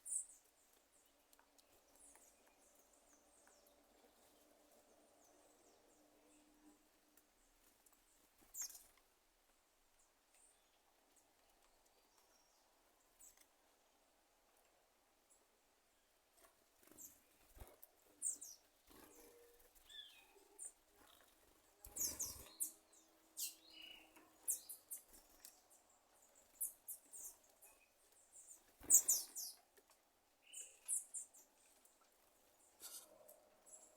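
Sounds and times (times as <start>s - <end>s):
bird chirps: 18.2s - 29.6s, 30.4s - 31.6s, 32.6s - 33.9s.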